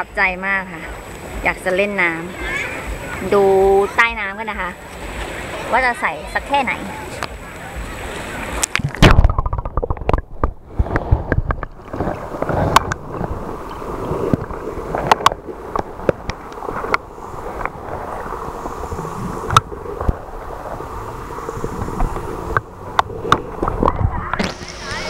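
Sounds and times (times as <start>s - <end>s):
water sloshing and gurgling: 0.0s - 25.0s
knocks and splashes: 6.7s - 18.2s, 21.7s - 24.8s.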